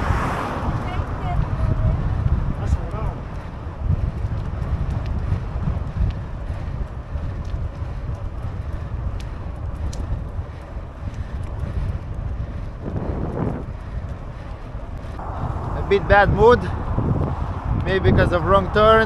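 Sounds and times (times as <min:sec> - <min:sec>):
wind buffeting microphone: 0:00.0 - 0:19.0
faint light clicks: 0:07.3 - 0:11.8.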